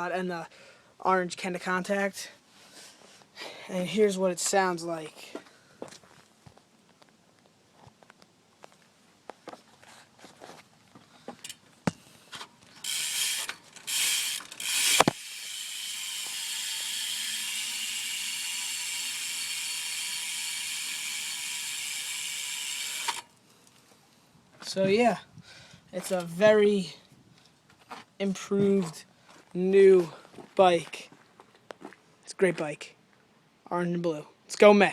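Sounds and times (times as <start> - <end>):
bicycle hub ratcheting: 12.8 - 23.3.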